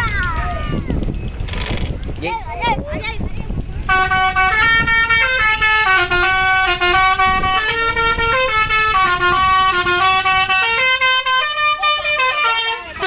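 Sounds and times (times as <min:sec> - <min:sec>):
bus horn playing a melody: 0:03.8 - 0:13.0.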